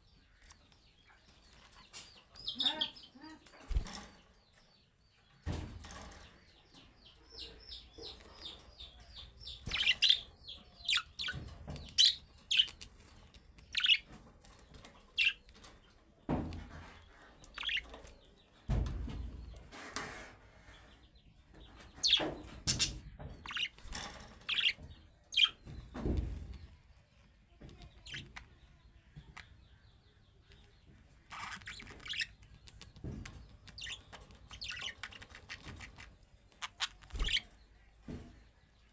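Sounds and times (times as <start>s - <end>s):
budgerigars chirping: 7.4s - 11.4s, 13.8s - 14.1s, 17.6s - 17.9s, 22.0s - 23.8s, 24.5s - 24.8s, 25.4s - 25.6s, 31.3s - 32.4s, 33.7s - 37.5s.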